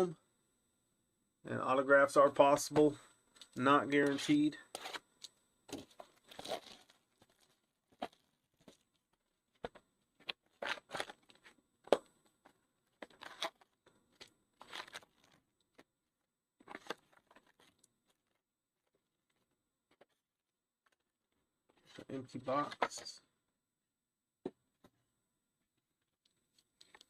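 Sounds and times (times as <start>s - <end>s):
wrapping tearing and crinkling: 5.7s - 8.7s, 10.5s - 11.5s, 13.0s - 15.4s.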